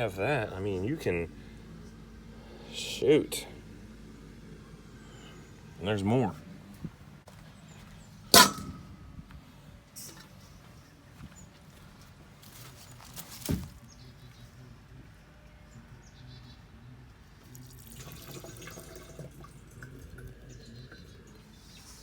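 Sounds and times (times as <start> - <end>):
sharp thump: 8.4 - 9.0.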